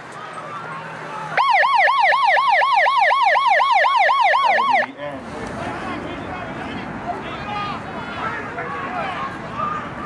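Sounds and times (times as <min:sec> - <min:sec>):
yelp siren: 0:01.4 - 0:04.9.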